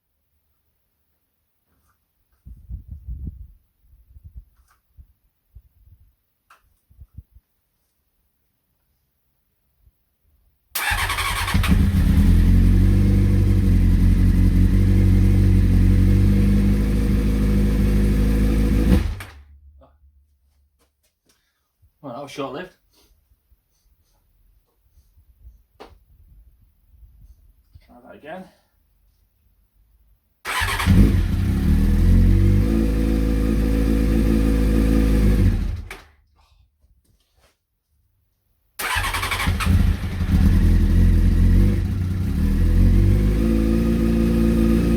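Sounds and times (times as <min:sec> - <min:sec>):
motorcycle engine running: 0:10.9 - 0:19.3, 0:39.6 - 0:44.9.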